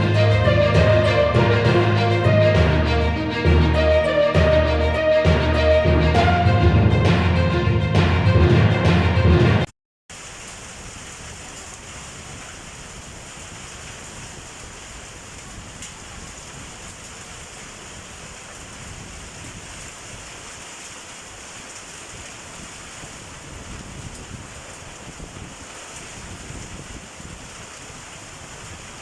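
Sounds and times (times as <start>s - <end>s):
heavy rain and hail: 10.1s - 29.0s.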